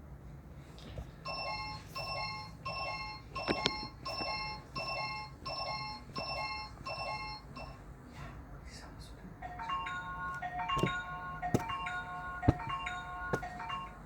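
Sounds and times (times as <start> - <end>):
two-note electronic alarm beeping: 1.3 - 7.8.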